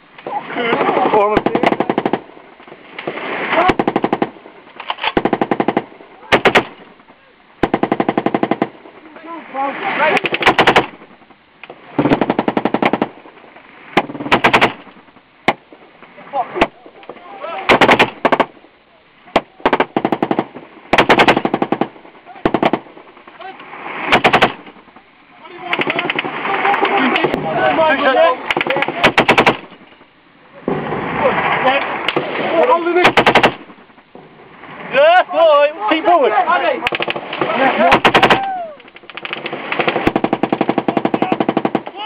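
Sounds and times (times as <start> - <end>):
machine gun firing bursts: 0.8 - 2.4, 3.5 - 7.0, 7.6 - 9.0, 10.0 - 11.2, 12.0 - 13.4, 14.0 - 15.7, 17.7 - 18.6, 19.3 - 23.4, 24.0 - 24.8, 25.6 - 29.8, 32.1 - 33.9, 36.8 - 38.4, 39.0 - 42.0.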